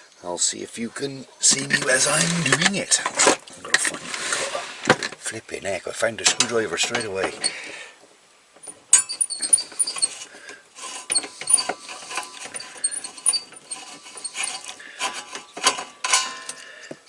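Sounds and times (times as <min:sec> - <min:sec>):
screwdriver clicking and scraping: 0:08.9 - 0:16.6.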